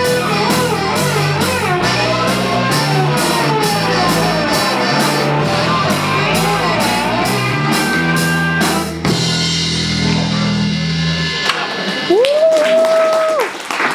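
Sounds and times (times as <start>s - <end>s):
rock music with guitar and drums: 0.0s - 12.1s.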